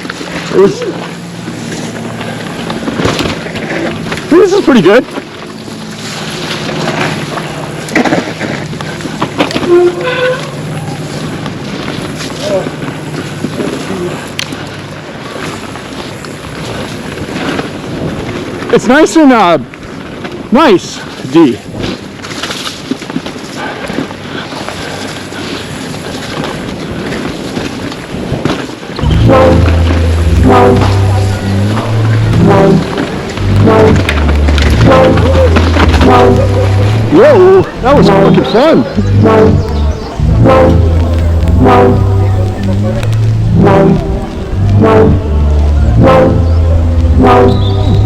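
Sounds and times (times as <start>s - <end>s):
bike tyres rumbling on dirt: 0.0s - 48.0s.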